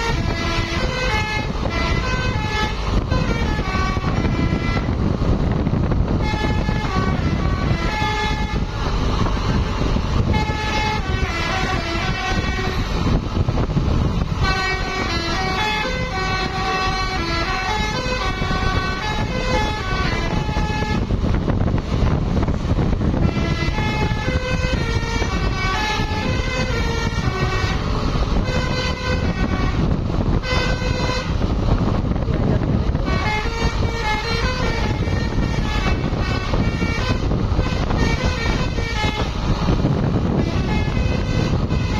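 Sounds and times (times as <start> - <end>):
bus engine rumble: 0.0 - 41.9
multi-tone bus air horn melody: 0.0 - 41.9
road noise: 0.0 - 41.9.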